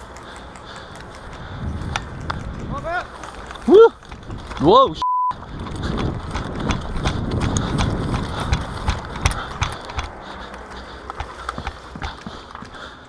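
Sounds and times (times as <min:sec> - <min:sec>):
hurried footsteps: 0:00.0 - 0:13.0
gear rattling: 0:00.8 - 0:12.8
sharp clicks and knocks: 0:05.6 - 0:12.8.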